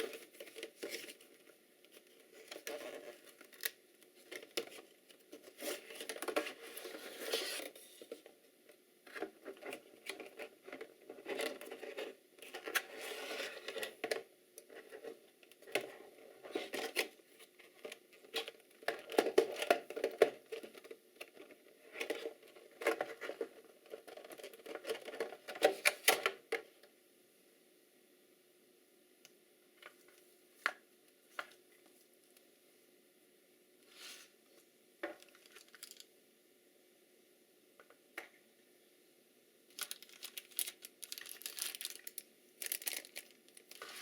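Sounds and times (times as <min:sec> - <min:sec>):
packaging rustling and crinkling: 0:35.2 - 0:36.1, 0:39.7 - 0:44.0.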